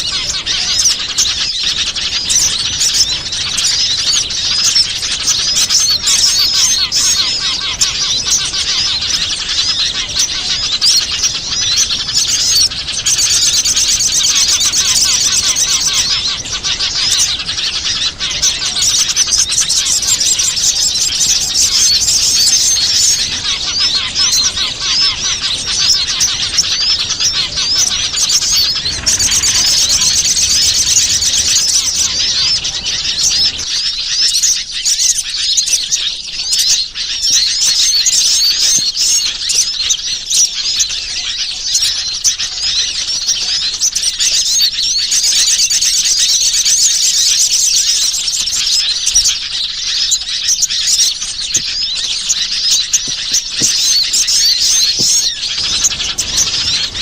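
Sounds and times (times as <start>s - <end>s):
songbirds chirping and twittering: 0.0s - 57.0s.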